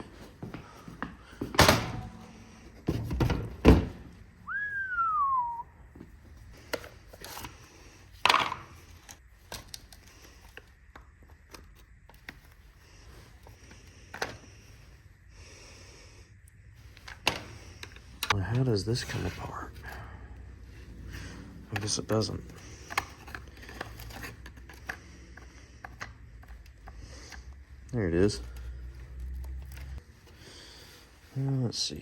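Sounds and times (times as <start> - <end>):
short whistled note: 4.4 - 5.7.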